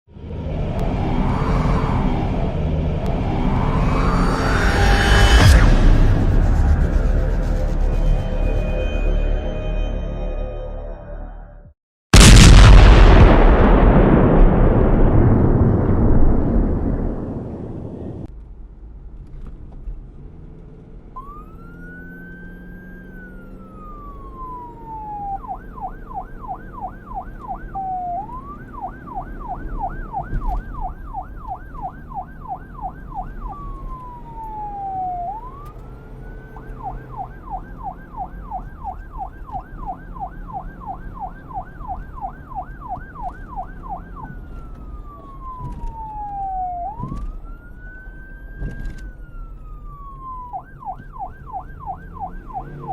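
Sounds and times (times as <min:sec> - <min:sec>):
low rumble: 0:00.1 - 0:11.6, 0:12.2 - 0:20.2
emergency siren wailing and yelping: 0:00.2 - 0:05.8, 0:21.2 - 0:52.9.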